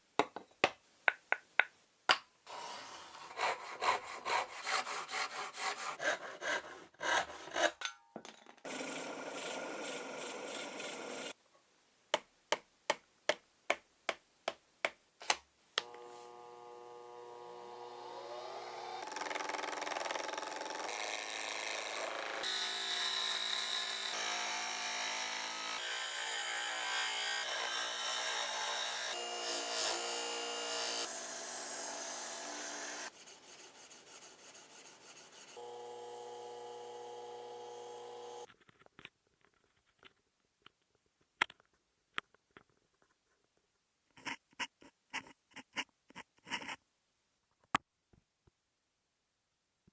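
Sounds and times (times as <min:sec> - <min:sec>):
power tool grinding wood: 0:08.7 - 0:11.3, 0:15.8 - 0:33.1, 0:35.6 - 0:38.5.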